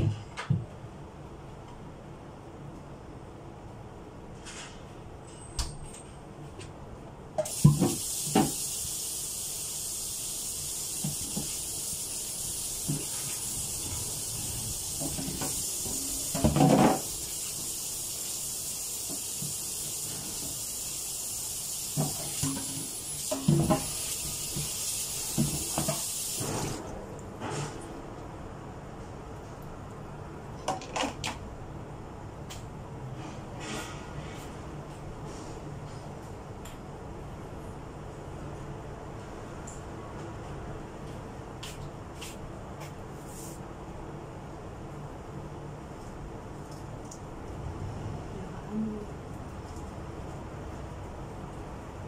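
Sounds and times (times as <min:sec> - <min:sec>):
water running from a tap: 0:07.4 - 0:26.8
items knocking and clattering: 0:16.3 - 0:17.1.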